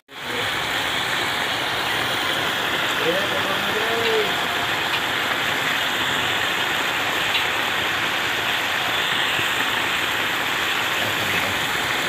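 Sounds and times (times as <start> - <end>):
pan simmering with hissing rush: 0.1 - 12.0.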